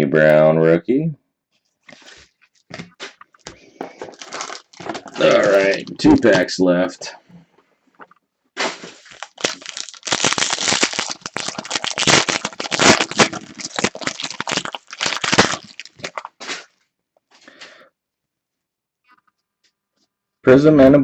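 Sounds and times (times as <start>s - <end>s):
foil wrapper crinkling: 1.9s - 7.1s, 8.0s - 16.8s.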